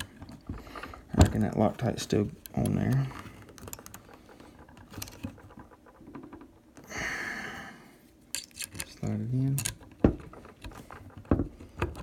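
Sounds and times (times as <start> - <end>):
metal parts clicking: 2.3 - 4.1, 8.3 - 10.0.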